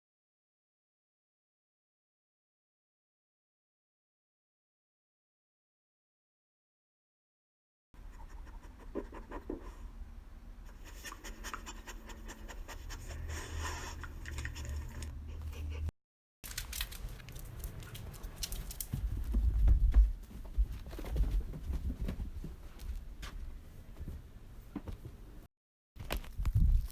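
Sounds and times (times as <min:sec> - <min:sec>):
scratching and rustling: 0:16.5 - 0:25.2.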